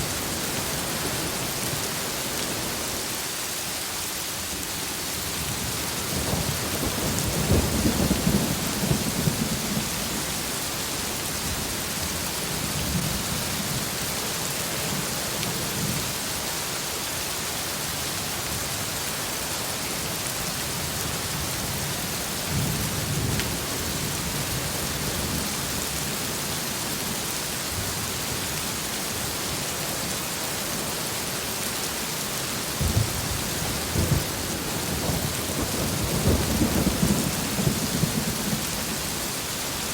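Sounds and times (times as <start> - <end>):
heavy rain falling: 0.0 - 39.9
thunder rumbling: 32.7 - 39.2.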